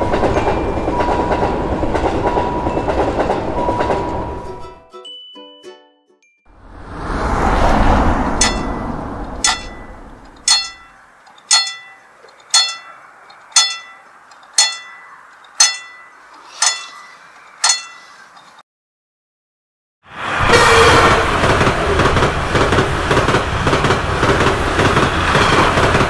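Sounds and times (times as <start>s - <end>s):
train rushing past: 0.0s - 4.7s, 6.5s - 11.1s, 20.1s - 26.0s
level crossing alarm bell: 8.4s - 18.2s.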